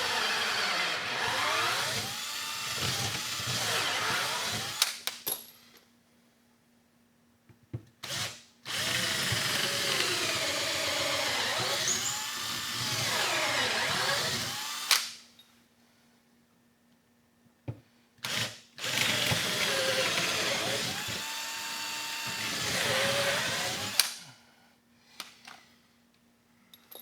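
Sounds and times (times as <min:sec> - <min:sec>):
power drill boring into wood: 0:00.0 - 0:04.9, 0:08.1 - 0:15.0, 0:18.3 - 0:24.1.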